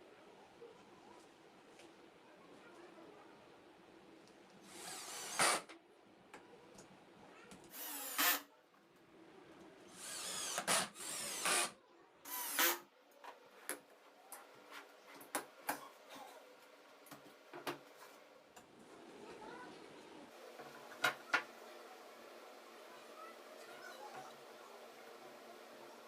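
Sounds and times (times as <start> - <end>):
power drill whining: 4.7 - 5.6, 7.7 - 8.4, 10.0 - 11.7, 12.3 - 12.8.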